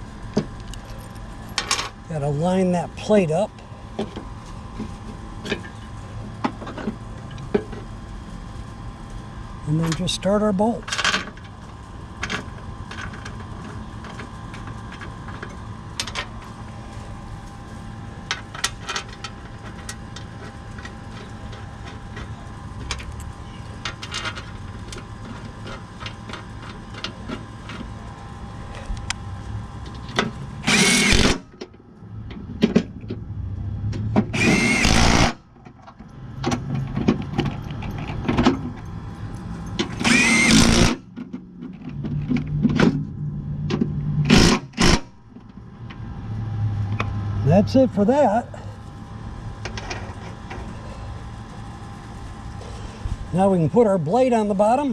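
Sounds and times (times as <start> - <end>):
steady background hum: 0.0 - 54.9
cordless power driver running: 11.4 - 31.7, 34.2 - 35.5, 39.8 - 41.1, 44.2 - 45.3.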